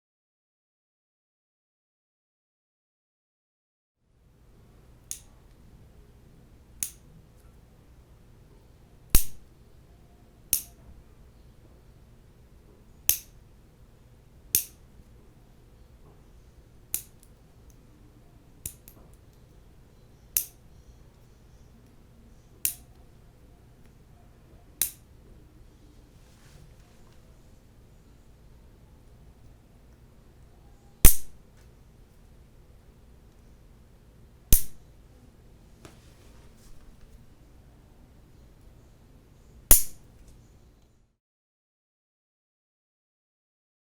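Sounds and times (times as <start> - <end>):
faint low hum: 4.1 - 41.2
nail clippers clipping: 5.1 - 5.3, 6.8 - 7.0, 9.2 - 9.5, 10.5 - 10.8, 13.1 - 13.4, 14.5 - 14.8, 16.9 - 17.3, 18.6 - 19.0, 20.4 - 20.6, 22.6 - 22.9, 24.8 - 25.1, 31.0 - 31.4, 34.5 - 34.8, 39.7 - 40.0.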